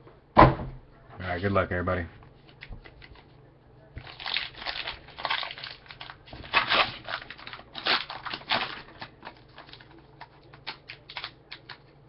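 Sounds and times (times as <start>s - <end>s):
wrapping crinkling and tearing: 4.0s - 11.9s.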